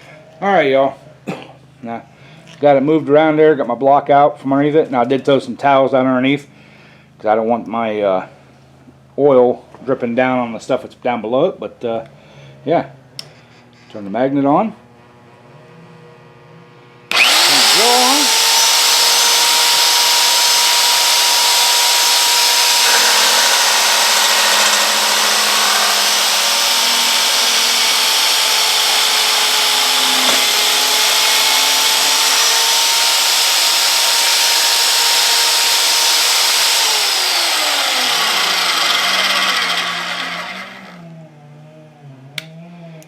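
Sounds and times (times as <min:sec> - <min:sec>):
drill motor whine: 0:17.0 - 0:41.2
cutter grinding through steel: 0:17.1 - 0:41.1.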